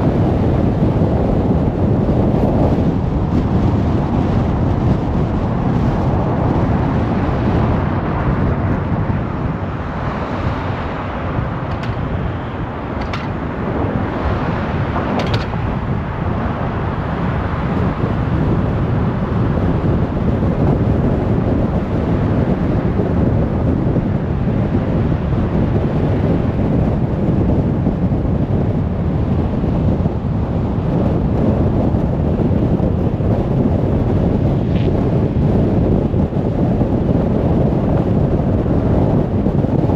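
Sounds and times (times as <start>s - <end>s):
highway traffic rushing: 0.0s - 39.9s.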